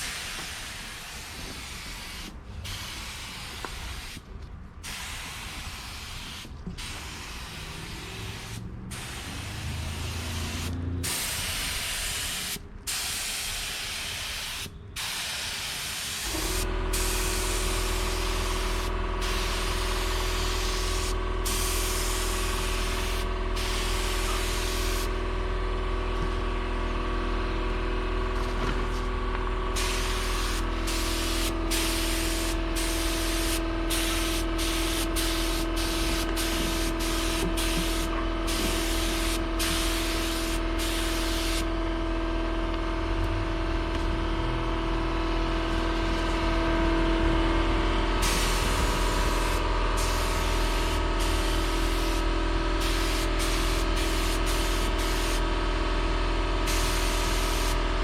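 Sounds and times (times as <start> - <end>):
spray gun hissing: 0.0 - 4.2, 4.8 - 25.1, 29.7 - 41.6, 48.2 - 55.4, 56.7 - 57.8
loud machine hum: 7.6 - 11.4, 16.2 - 58.0.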